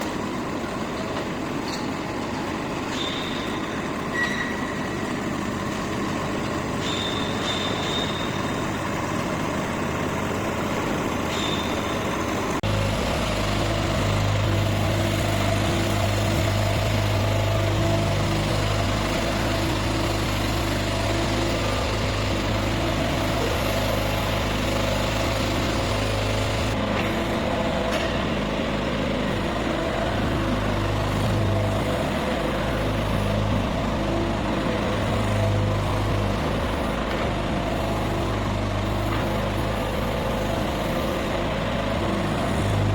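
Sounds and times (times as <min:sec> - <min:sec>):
excavator engine and hydraulics: 0:00.0 - 0:42.9
high squeaks: 0:02.9 - 0:05.2, 0:06.8 - 0:08.7.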